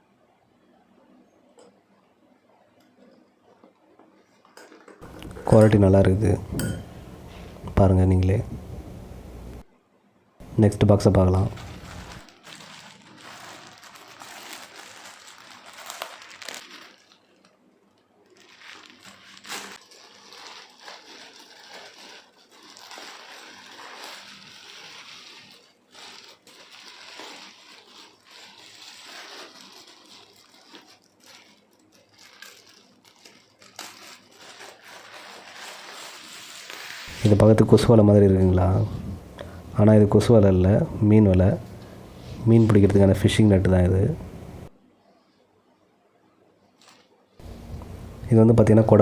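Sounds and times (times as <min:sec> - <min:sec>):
plastic packaging crinkling: 0:05.0 - 0:09.6, 0:10.4 - 0:17.6, 0:18.2 - 0:44.8, 0:46.8 - 0:49.0
sharp crackles: 0:05.0 - 0:09.6, 0:10.4 - 0:17.5, 0:18.2 - 0:44.8, 0:46.9 - 0:49.0.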